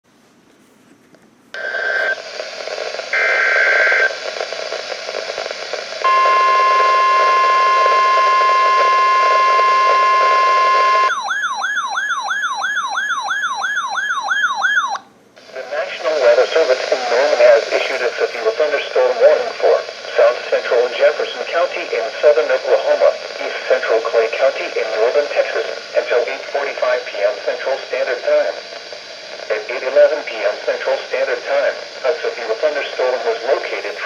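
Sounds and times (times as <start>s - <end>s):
radio hiss: 1.6s - 11.1s, 15.4s - 34.0s
steady warning alarm tone: 6.0s - 15.0s
warbling alarm: 6.1s - 15.0s.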